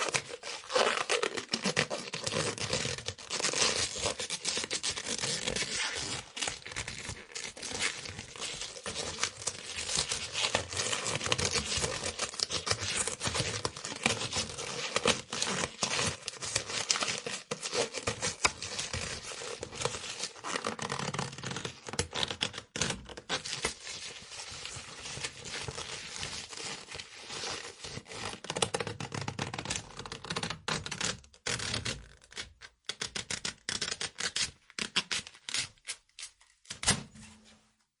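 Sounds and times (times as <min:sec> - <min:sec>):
rubber stretching and creaking: 0:00.0 - 0:16.6.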